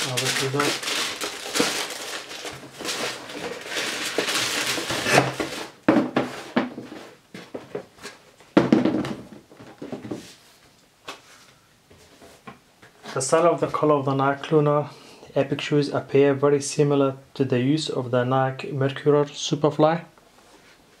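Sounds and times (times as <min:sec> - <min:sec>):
packaging rustling: 0:00.0 - 0:05.8.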